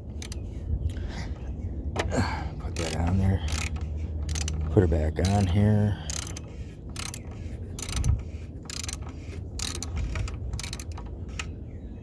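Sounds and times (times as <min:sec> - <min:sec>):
hand ratchet clicking: 0:00.1 - 0:00.4, 0:02.7 - 0:11.5.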